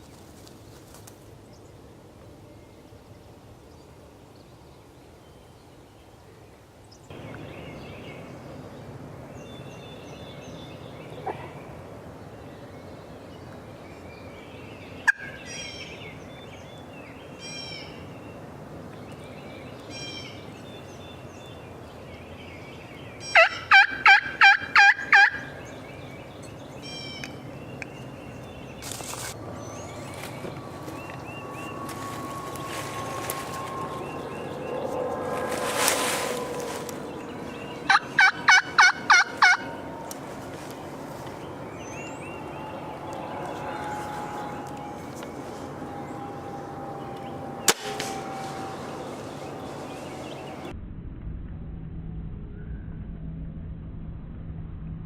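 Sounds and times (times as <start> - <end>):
songbirds chirping: 0.0 - 50.7
turkey yelps: 23.3 - 25.5, 37.9 - 39.7.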